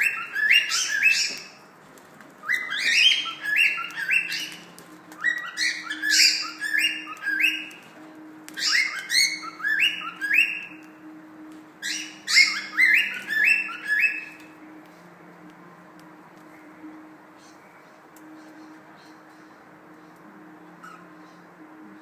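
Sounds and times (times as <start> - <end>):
cockatiel chirping: 0.0 - 1.6, 2.4 - 7.9, 8.5 - 10.8, 11.8 - 14.5.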